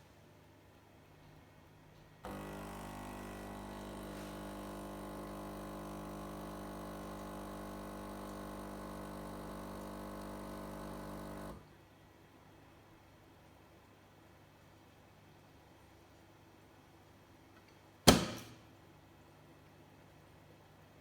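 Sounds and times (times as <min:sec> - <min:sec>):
espresso machine pump humming: 0:02.3 - 0:11.6.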